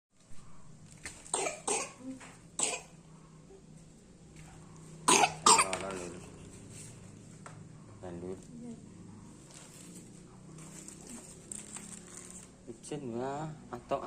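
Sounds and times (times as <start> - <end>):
boy coughing: 1.3 - 3.0, 5.1 - 6.4.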